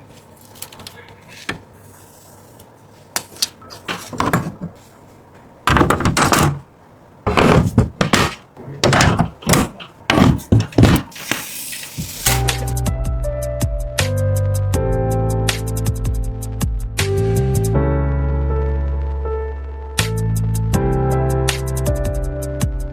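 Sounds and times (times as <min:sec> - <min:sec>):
scraping thuds: 0:03.7 - 0:04.8, 0:05.7 - 0:06.7, 0:07.3 - 0:12.7
computer parts clicking and knocking: 0:03.8 - 0:04.8, 0:05.7 - 0:06.7, 0:07.3 - 0:11.4.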